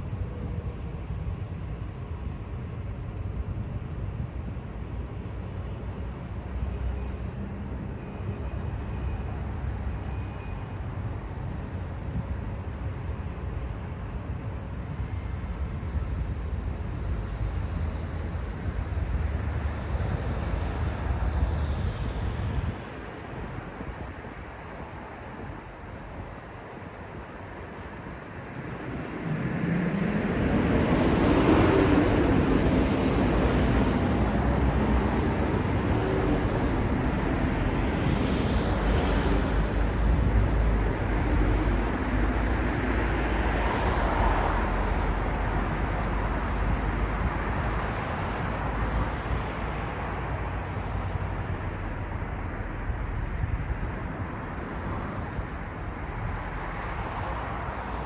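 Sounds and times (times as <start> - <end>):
road traffic rumbling: 15.3 - 58.0.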